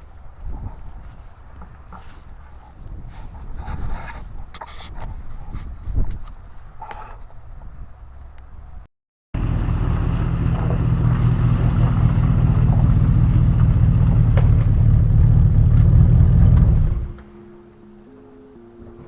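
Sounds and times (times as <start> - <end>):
engine running steadily: 9.4 - 17.2.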